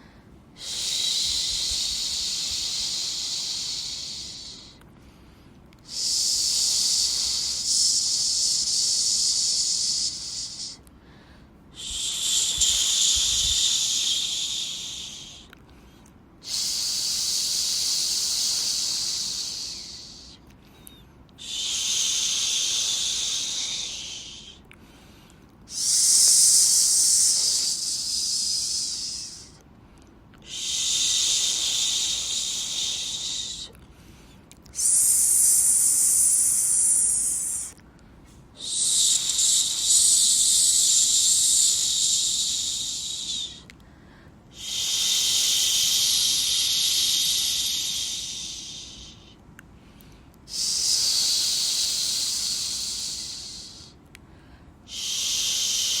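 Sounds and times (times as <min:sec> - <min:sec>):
person shushing: 0:34.7 - 0:37.8, 0:38.6 - 0:43.6.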